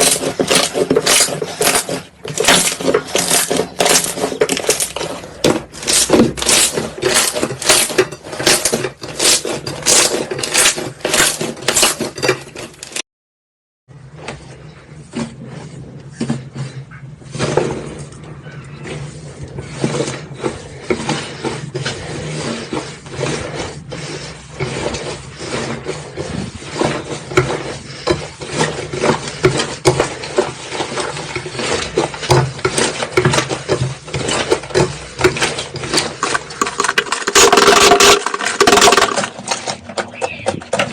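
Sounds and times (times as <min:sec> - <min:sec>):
loud rasping burst: 0:35.8 - 0:39.7.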